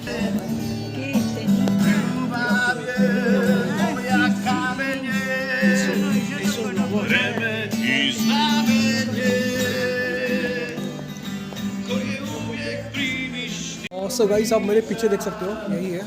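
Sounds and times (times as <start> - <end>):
wavering singing voice: 1.8 - 11.0.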